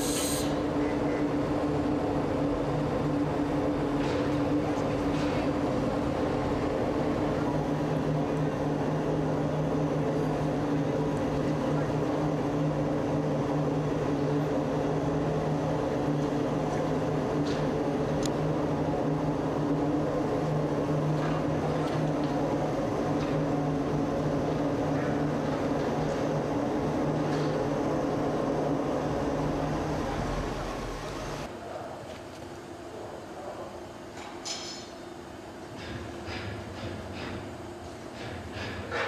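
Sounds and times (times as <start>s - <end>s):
machinery drone: 0.0s - 31.5s.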